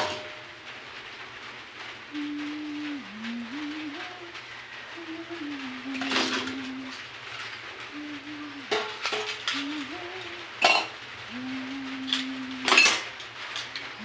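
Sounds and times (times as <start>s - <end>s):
dishes and cutlery clinking: 0.0s - 0.4s, 5.9s - 8.0s, 8.7s - 11.0s, 12.0s - 13.9s.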